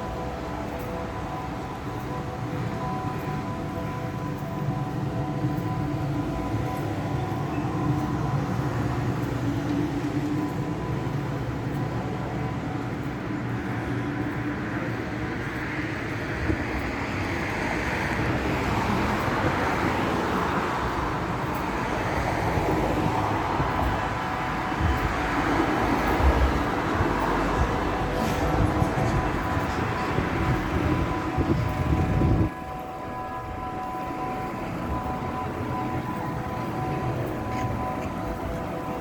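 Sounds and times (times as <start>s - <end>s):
city background noise: 0.0s - 39.0s.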